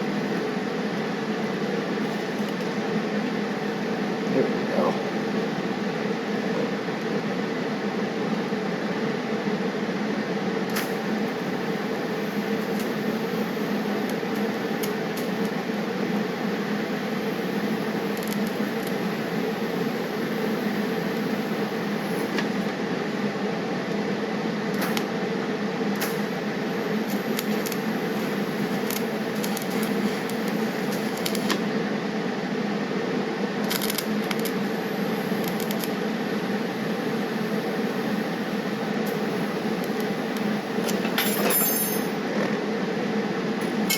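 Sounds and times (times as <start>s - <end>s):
welding arc buzzing hiss: 10.6s - 23.8s, 24.4s - 31.7s, 33.6s - 42.4s.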